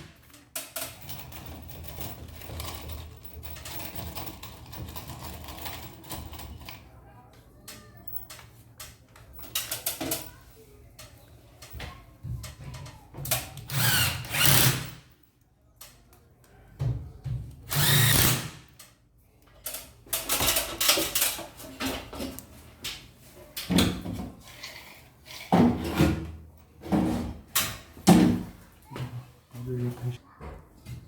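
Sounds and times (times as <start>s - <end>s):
knocks and handling clatter: 0.0s - 6.9s, 7.6s - 13.6s, 19.5s - 29.2s
power drill bursts: 13.7s - 14.9s, 17.7s - 18.6s.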